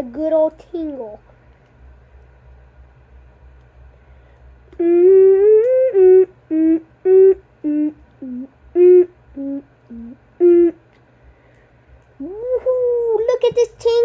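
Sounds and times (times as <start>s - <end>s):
boy humming a tune: 4.7s - 10.8s, 12.2s - 13.2s.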